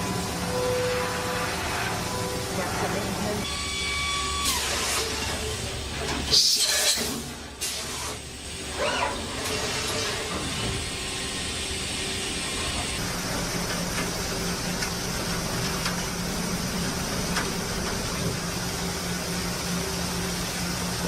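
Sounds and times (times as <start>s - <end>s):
heavy machinery humming: 0.0s - 6.4s.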